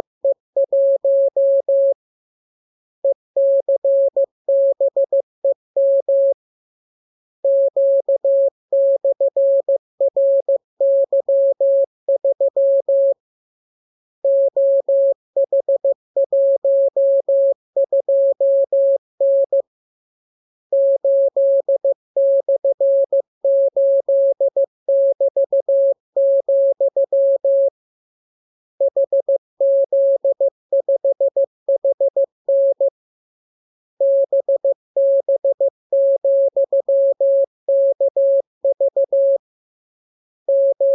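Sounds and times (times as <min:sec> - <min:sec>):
morse code beeps: 0:40.5 - 0:40.9.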